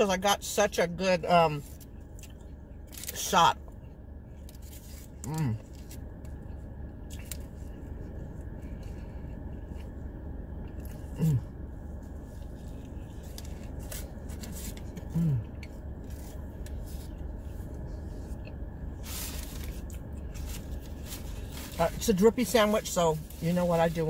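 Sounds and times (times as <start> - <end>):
car air conditioning hum: 0.0 - 24.0
woman humming mm: 15.1 - 15.6.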